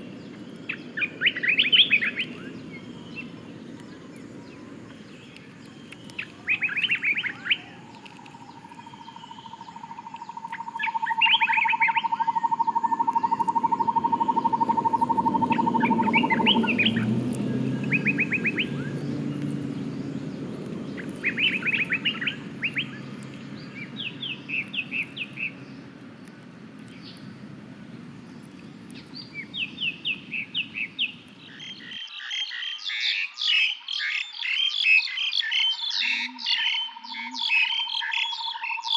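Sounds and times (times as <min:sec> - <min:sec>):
birds chirping: 0:00.0 - 0:38.9.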